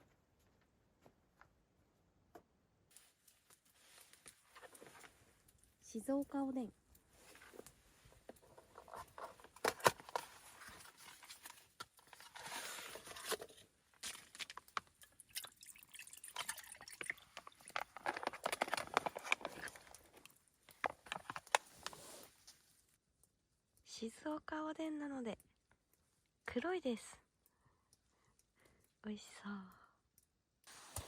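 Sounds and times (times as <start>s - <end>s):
broth pouring and dripping: 14.0s - 21.8s.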